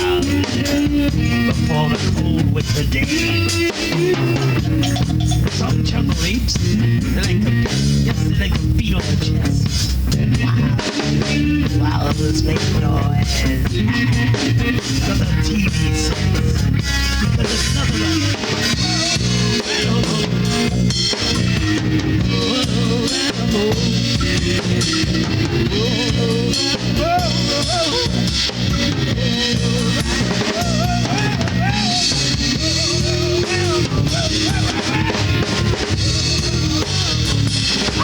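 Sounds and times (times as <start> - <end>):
bass guitar: 0.0 - 38.0
drum kit: 0.0 - 38.0
electric guitar: 0.0 - 38.0
wavering melodic line: 4.6 - 5.6.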